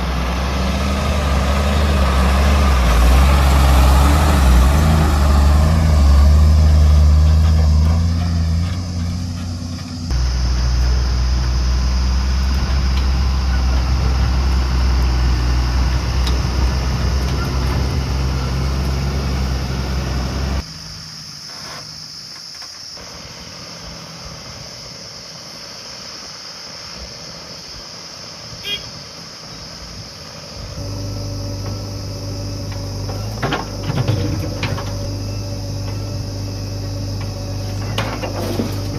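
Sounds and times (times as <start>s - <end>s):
heavy diesel engine running: 0.0s - 20.6s, 30.6s - 38.9s
steady high-pitched hiss: 0.0s - 38.9s.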